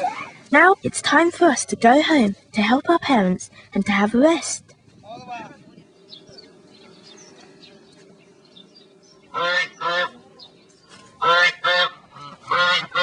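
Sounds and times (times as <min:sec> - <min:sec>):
geese honking: 0:09.0 - 0:13.0.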